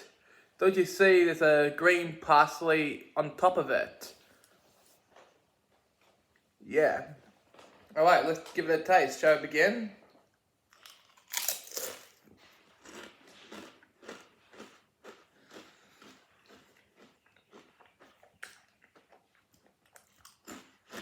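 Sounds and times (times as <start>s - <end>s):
person crunching potato chip: 10.7s - 21.0s.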